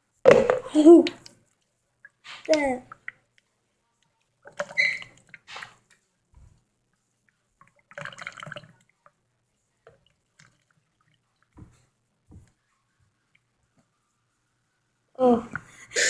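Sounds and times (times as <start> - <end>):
coconut water dripping and splashing: 1.0 - 3.4, 4.4 - 5.8, 7.6 - 9.2, 9.8 - 11.8.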